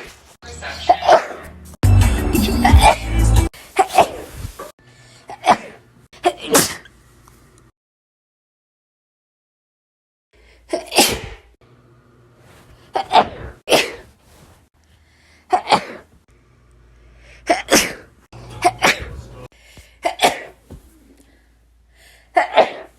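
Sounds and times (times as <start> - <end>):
person sneezing: 2.4 - 3.0, 3.6 - 4.7, 5.3 - 6.9, 10.7 - 11.5, 12.9 - 14.1, 15.5 - 16.1, 17.4 - 19.4, 20.0 - 21.1, 22.3 - 22.9
background hum: 14.8 - 22.4.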